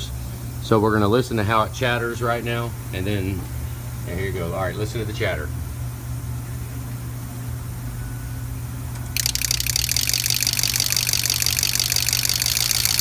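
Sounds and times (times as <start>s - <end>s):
low hum: 9.0s - 13.0s
diesel injectors chattering: 9.2s - 13.0s.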